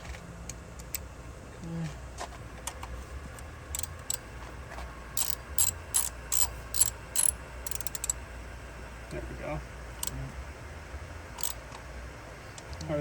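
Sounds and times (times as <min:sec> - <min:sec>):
socket ratchet wrench clicking: 0:03.7 - 0:04.2, 0:05.2 - 0:08.2, 0:11.4 - 0:11.6.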